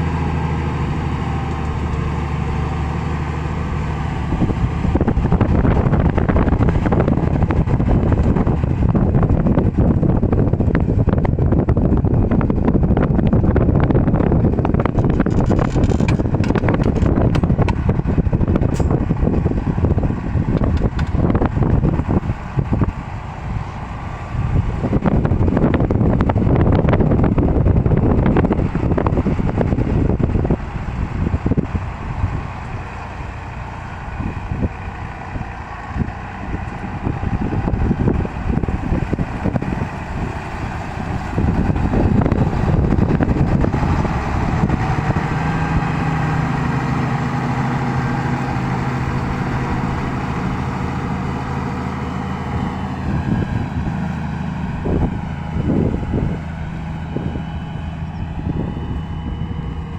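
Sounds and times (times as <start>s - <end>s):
tractor diesel engine under load: 0.0s - 59.9s.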